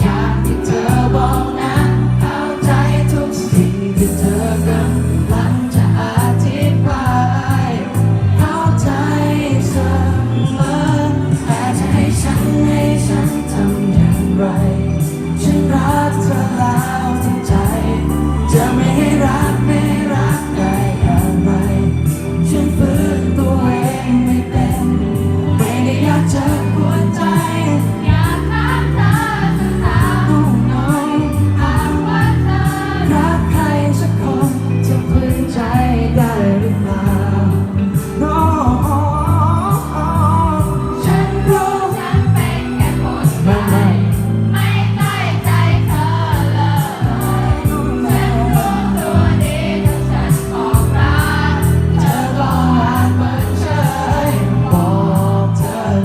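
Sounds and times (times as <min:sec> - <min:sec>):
person singing: 0:00.0 - 0:32.0, 0:47.2 - 0:56.0
live pop song by band: 0:00.0 - 0:56.0.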